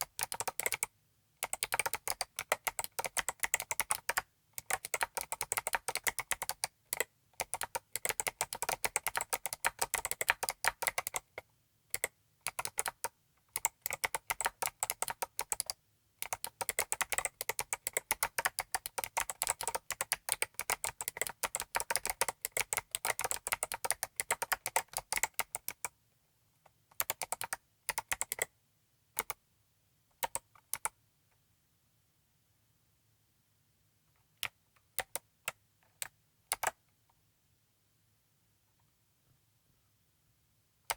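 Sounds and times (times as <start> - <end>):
typing on clicky mechanical keyboard: 0.0 - 25.9, 27.0 - 28.5, 34.4 - 35.2, 36.0 - 36.8.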